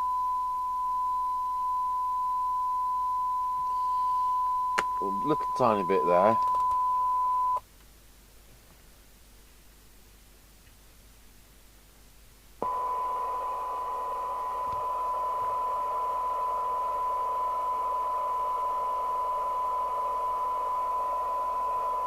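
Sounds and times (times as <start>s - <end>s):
steady test tone: 0.0s - 7.6s, 12.6s - 22.0s
radio hiss: 3.8s - 6.5s, 12.6s - 22.0s.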